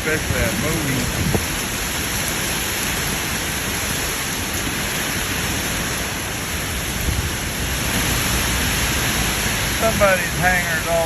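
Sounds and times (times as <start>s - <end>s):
heavy rain: 0.0s - 11.0s
high wind: 0.0s - 11.0s
low rumble of gusts: 0.0s - 11.0s.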